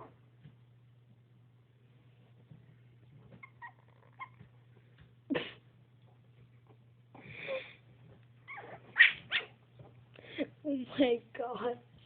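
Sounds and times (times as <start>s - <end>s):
puppies yipping and whining: 3.3s - 4.5s, 8.4s - 9.6s.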